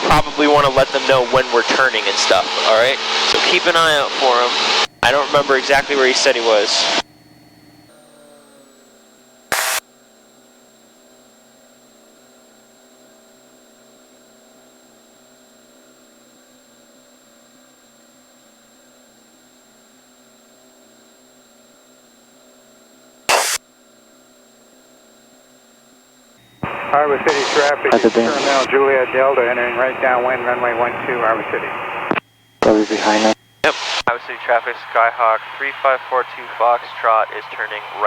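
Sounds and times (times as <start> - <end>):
loud static bursts: 0.0 - 7.0, 9.5 - 9.8, 23.3 - 23.6, 26.6 - 38.0
steady electronic tones: 0.0 - 9.8, 23.3 - 23.6, 26.4 - 38.0.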